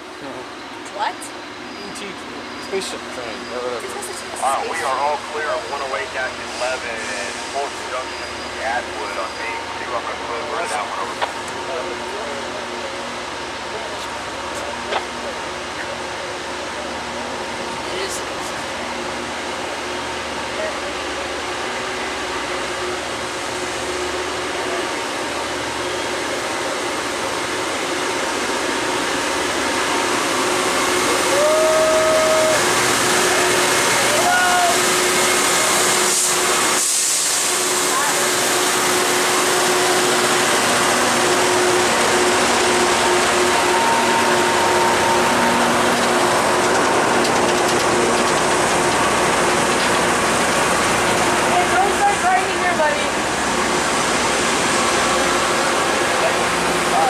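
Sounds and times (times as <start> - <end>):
train approaching with whooshing: 0.0 - 57.0
engine hum: 2.0 - 57.0
loud mechanical din: 32.4 - 57.0.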